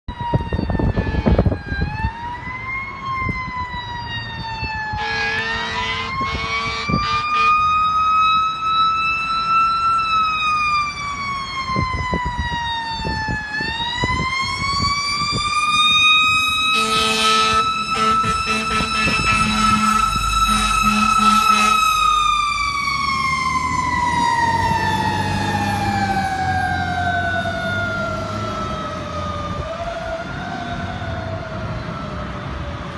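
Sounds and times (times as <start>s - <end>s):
fire engine horn blasts: 4.9s - 7.9s, 16.2s - 22.8s.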